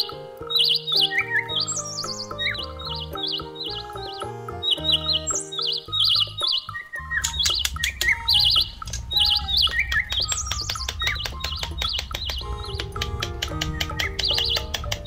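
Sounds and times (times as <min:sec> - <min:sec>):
instrumental music with chirping trills: 0:00.0 - 0:15.0
steady beat: 0:07.3 - 0:15.0.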